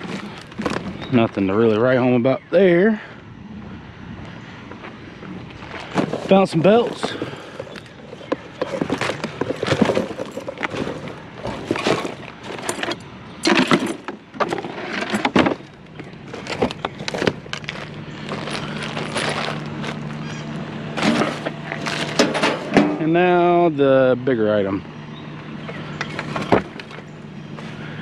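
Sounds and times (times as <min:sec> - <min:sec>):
scrap clattering and knocking: 0:05.7 - 0:23.1.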